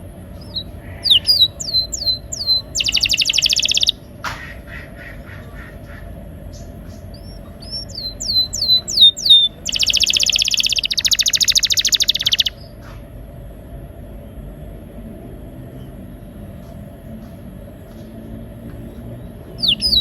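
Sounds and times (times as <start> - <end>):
canary singing: 0.0 - 12.8, 19.2 - 20.0
faint steady hum: 0.0 - 20.0.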